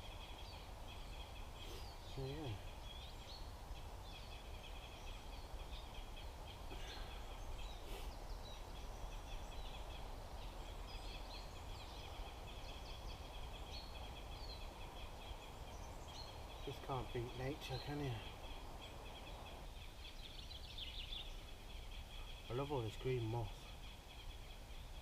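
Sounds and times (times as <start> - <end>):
small birds chirping: 0.0 - 25.0.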